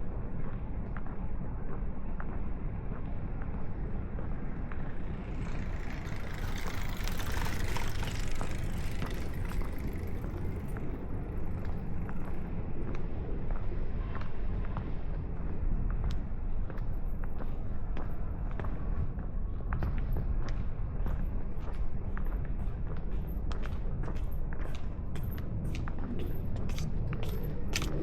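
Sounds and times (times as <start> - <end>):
steady low rumble: 0.0 - 28.0
vehicle driving past: 4.2 - 12.4
footsteps: 24.7 - 28.0.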